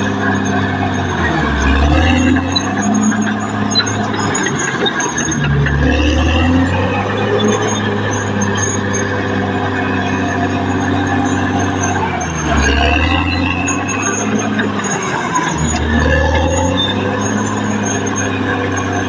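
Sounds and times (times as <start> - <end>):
bulldozer diesel engine under load: 0.0 - 19.0.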